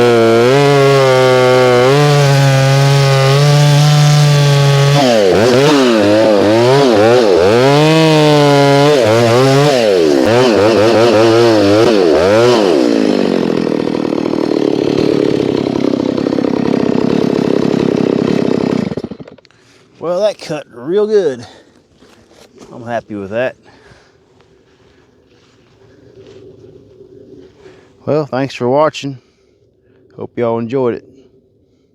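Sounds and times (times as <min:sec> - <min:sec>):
chainsaw cutting wood: 0:00.0 - 0:19.9.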